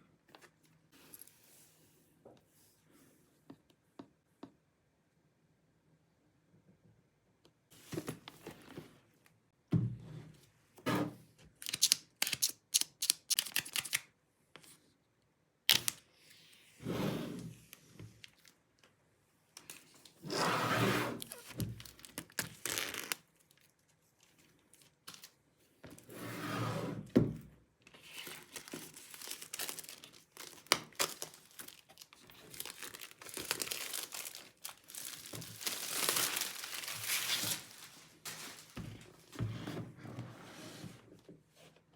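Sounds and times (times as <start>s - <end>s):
wrapping tearing and crinkling: 11.6s - 14.1s, 21.2s - 25.4s, 28.0s - 38.9s.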